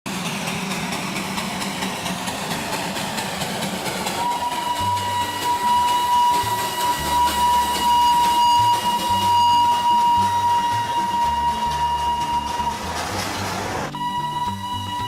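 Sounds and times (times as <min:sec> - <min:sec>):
steam train rhythmic clatter: 0:00.1 - 0:15.0
steady high tone: 0:04.2 - 0:13.1, 0:13.8 - 0:15.0.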